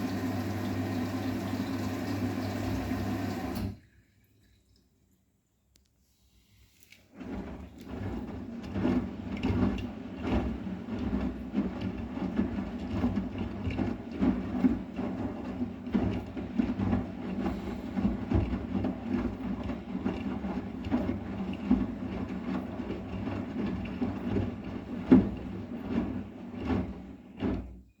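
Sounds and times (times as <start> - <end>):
washing machine motor hum: 0.0 - 3.8, 7.1 - 27.7
drum knocking and clattering: 7.2 - 27.9.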